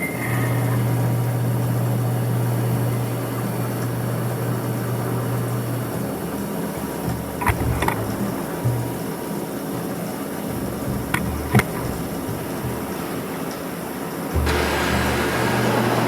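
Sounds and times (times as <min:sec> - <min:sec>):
machine motor humming: 0:00.6 - 0:16.0
sharp knocks: 0:14.3 - 0:16.0.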